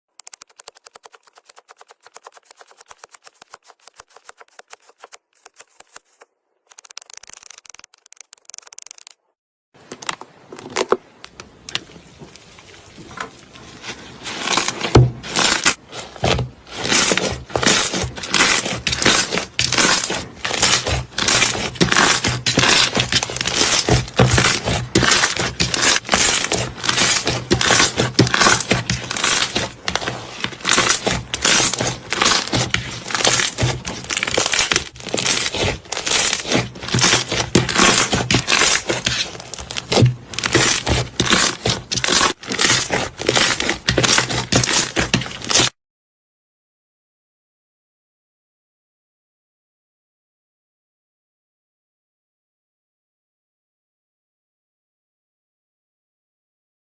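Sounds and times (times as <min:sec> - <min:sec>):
sand being squished: 0:11.8 - 0:45.8.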